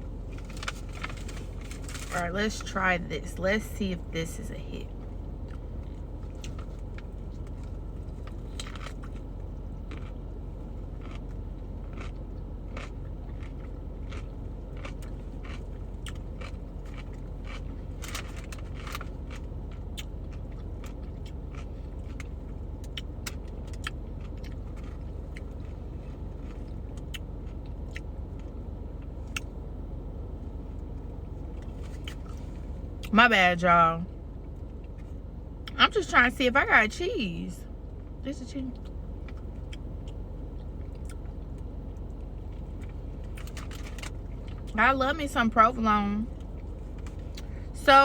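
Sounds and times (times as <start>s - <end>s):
low hum: 0.0s - 48.0s
person chewing crunchy food: 5.2s - 29.6s.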